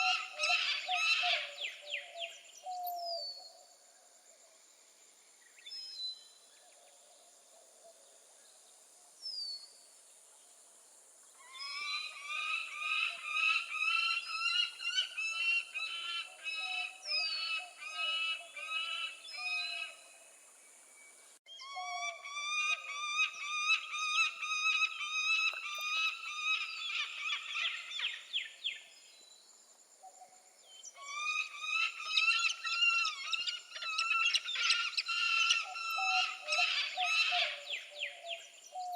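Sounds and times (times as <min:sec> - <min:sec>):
falcon calling rapidly: 0:31.0 - 0:37.6.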